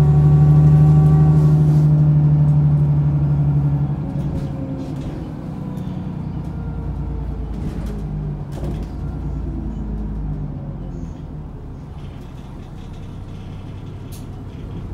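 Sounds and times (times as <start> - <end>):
bus engine running: 0.0 - 14.9
bus clicks and creaks: 0.5 - 14.9.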